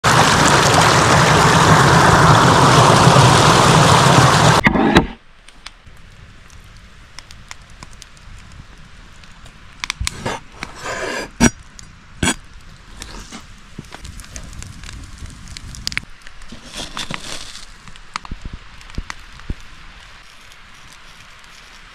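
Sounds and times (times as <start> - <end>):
running water rushing: 0.0 - 4.6.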